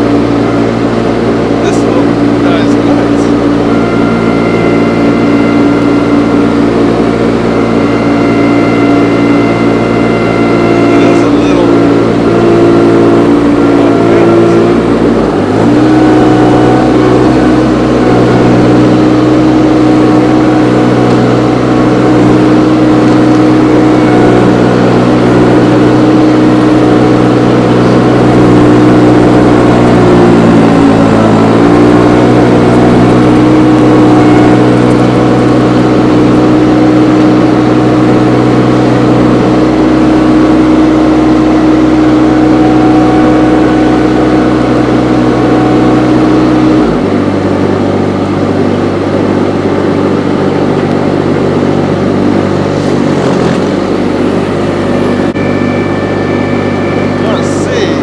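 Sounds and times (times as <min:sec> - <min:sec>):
engine running: 0:00.0 - 0:58.0.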